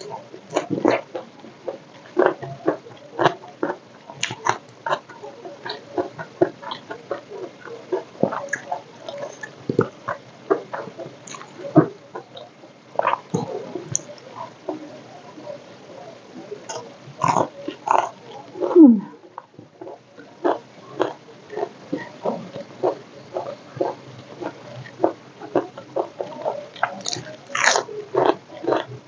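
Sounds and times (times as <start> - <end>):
chewing with wet mouth clicks: 7.9 - 12.4, 19.4 - 29.0
crunching bites of food: 22.8 - 28.9.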